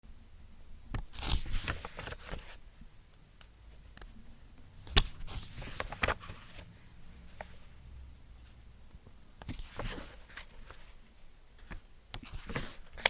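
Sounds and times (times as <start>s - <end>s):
page snapping: 0.9s - 2.5s, 4.9s - 6.6s
book pages flipping: 0.9s - 2.6s, 4.8s - 7.7s, 9.4s - 11.0s, 11.6s - 13.0s.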